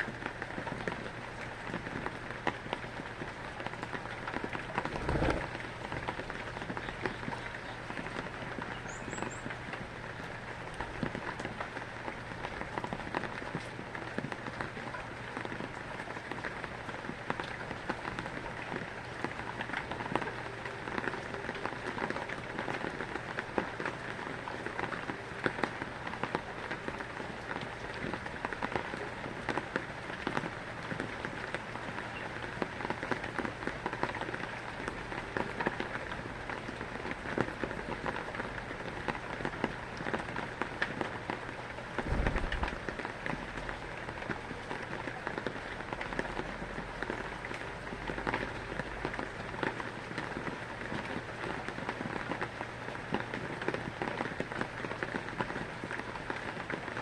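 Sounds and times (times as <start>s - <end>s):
rain pattering: 0.0s - 57.0s
low thump: 42.0s - 42.8s.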